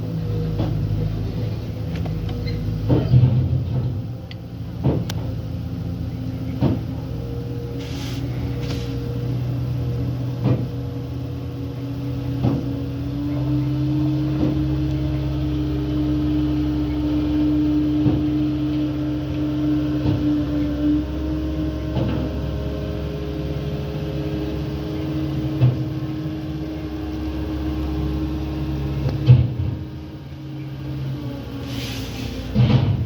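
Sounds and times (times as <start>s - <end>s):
diesel engine running: 0.0s - 33.0s
brief hiss: 7.8s - 9.2s, 31.6s - 32.6s.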